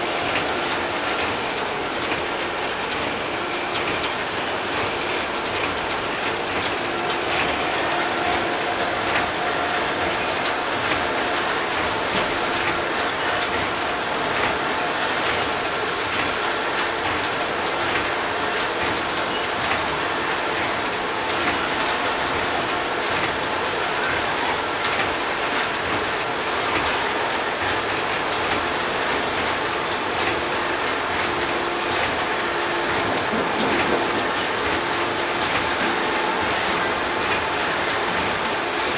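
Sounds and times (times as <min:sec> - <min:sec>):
packaging machine clattering: 0:27.6 - 0:38.9.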